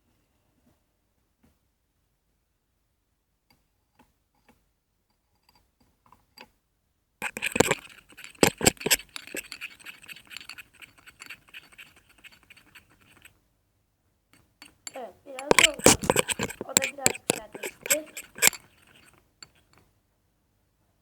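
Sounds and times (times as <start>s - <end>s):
faint clicks: 14.4s - 19.8s.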